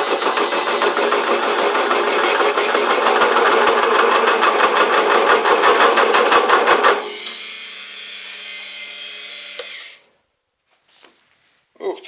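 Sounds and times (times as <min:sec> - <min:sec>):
metal lathe chattering: 0:00.0 - 0:07.0.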